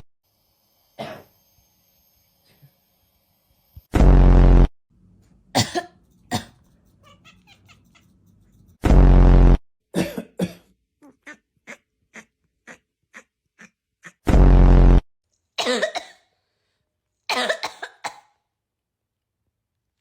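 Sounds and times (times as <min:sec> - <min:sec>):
person coughing loudly: 0:01.0 - 0:01.3, 0:05.6 - 0:06.6, 0:10.0 - 0:10.7, 0:15.6 - 0:16.2, 0:17.3 - 0:18.3
cat calling: 0:06.9 - 0:08.3, 0:11.1 - 0:14.3.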